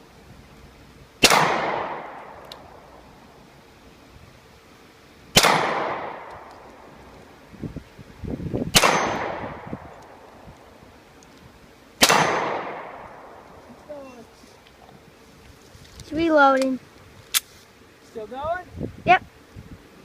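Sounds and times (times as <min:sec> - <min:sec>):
rifle shots with echo: 0:01.2 - 0:02.8, 0:05.4 - 0:06.9, 0:08.7 - 0:10.2, 0:12.0 - 0:13.5.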